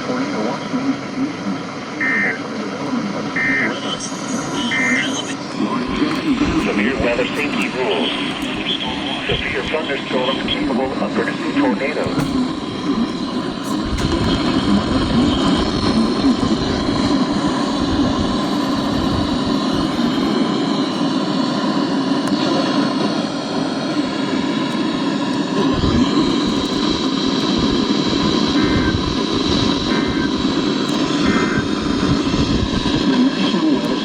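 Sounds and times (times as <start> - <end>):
radio static hiss: 0.0 - 34.0
faint short beeps: 3.4 - 5.4.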